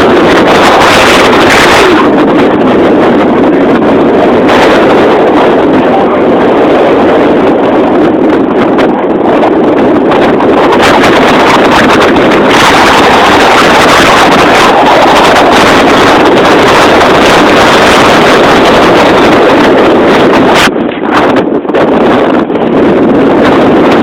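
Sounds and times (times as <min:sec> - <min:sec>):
wind blasting microphone: 0:00.0 - 0:24.0.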